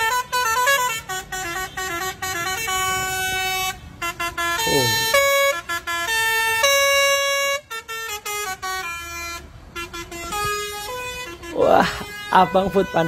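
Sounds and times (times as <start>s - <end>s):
multi-tone musical air horn: 0.0s - 13.0s.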